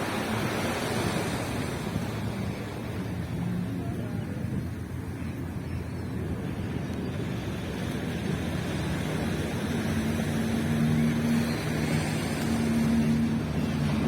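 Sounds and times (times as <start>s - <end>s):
boat motor humming: 0.0s - 14.0s
surf washing: 0.0s - 14.0s.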